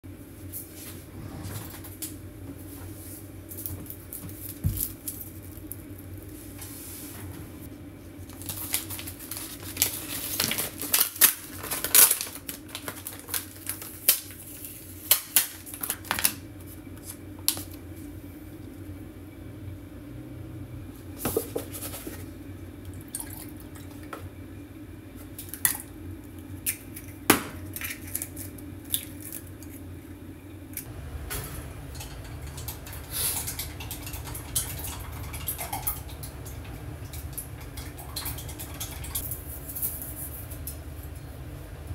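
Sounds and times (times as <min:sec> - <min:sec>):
steady low hum: 0:00.0 - 0:41.9
dishes and utensils clinking: 0:31.2 - 0:36.3.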